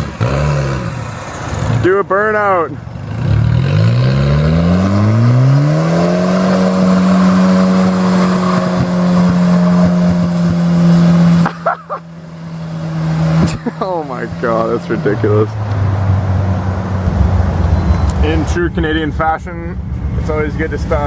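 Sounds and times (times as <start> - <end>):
tyres spinning on wet street: 0.0 - 12.1
car engine revving: 0.0 - 21.0.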